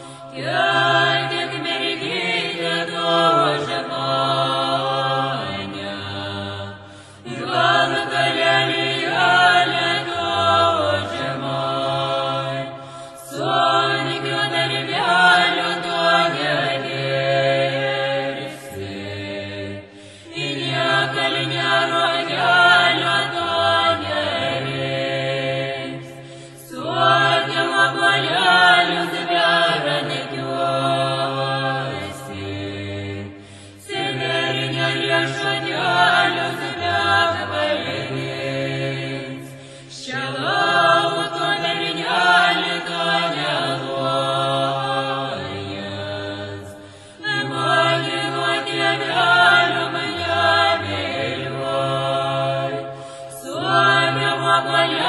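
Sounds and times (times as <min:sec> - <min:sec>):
chant-like layered vocals: 0:00.0 - 0:55.0.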